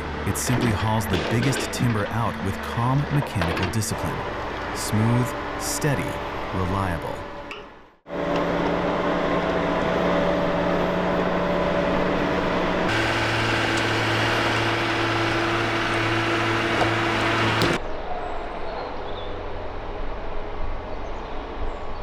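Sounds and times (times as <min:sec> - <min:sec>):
heavy machinery engines humming: 0:12.9 - 0:17.8.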